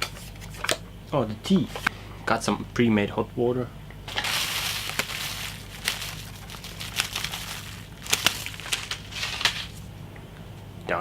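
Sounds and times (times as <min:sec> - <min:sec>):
crinkling and rustling: 0:04.1 - 0:10.0.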